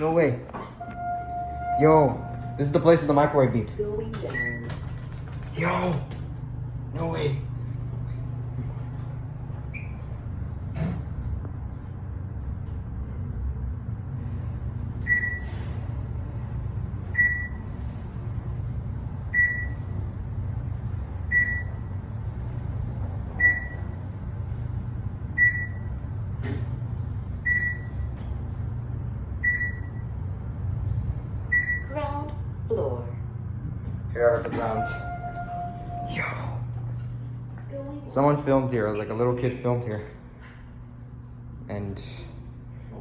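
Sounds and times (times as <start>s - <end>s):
elevator car hum: 0.0s - 43.0s
elevator beep: 0.6s - 3.1s, 4.0s - 5.0s, 9.7s - 10.2s, 15.0s - 15.6s, 17.1s - 17.7s, 19.3s - 20.0s, 21.3s - 21.8s, 23.4s - 24.0s, 25.3s - 26.0s, 27.4s - 28.1s, 29.4s - 30.2s, 31.5s - 32.0s, 34.5s - 36.7s.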